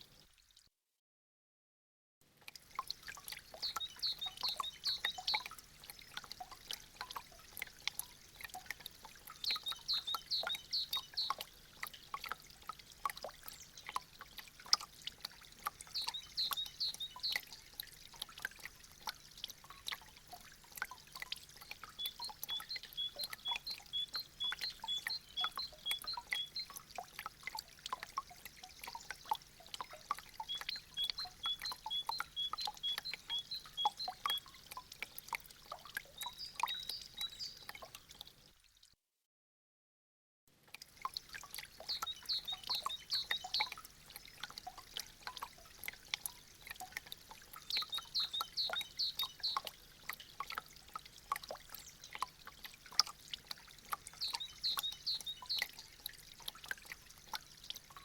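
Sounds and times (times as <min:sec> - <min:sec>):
meltwater dripping and trickling: 0:02.3 - 0:38.9, 0:40.6 - 0:58.0.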